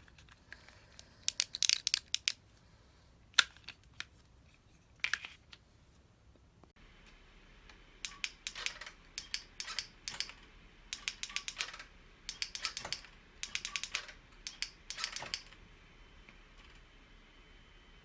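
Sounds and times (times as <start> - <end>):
sharp rapid small clicks: 8.0 - 15.6.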